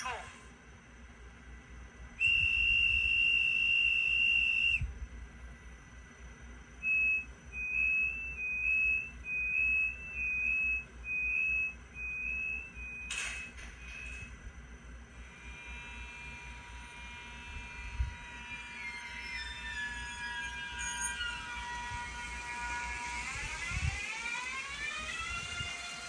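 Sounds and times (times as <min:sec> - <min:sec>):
high whistle-like tone: 0:02.2 - 0:04.9, 0:06.8 - 0:14.3, 0:18.3 - 0:26.0
short beeps: 0:06.9 - 0:14.2.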